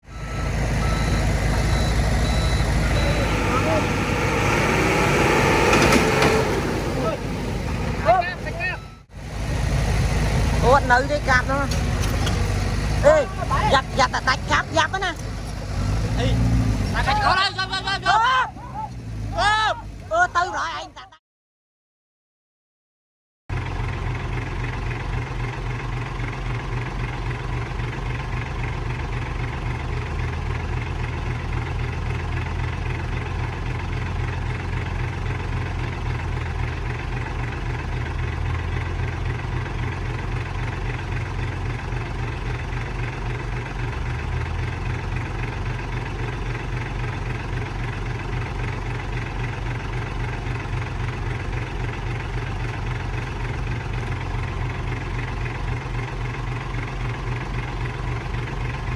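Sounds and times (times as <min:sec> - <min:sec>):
heavy machine engine throbbing: 0:00.1 - 0:19.4.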